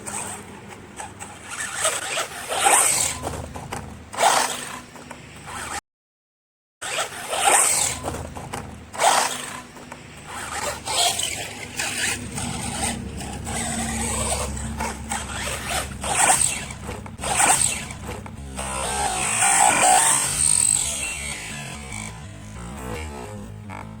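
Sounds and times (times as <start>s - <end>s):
tyres scrabbling on dirt: 6.9s - 18.4s
low drivetrain rumble: 7.4s - 24.0s.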